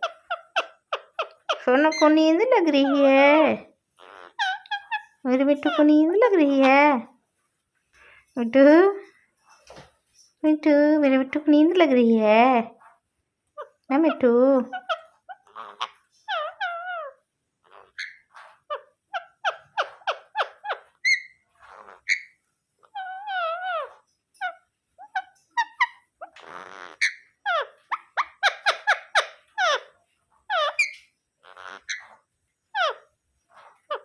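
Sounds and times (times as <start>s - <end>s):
parrot chirping and squeaking: 0.0s - 7.0s, 12.7s - 34.0s
person talking: 1.6s - 3.7s, 5.3s - 7.1s, 8.4s - 9.1s, 10.4s - 12.8s, 13.9s - 14.8s.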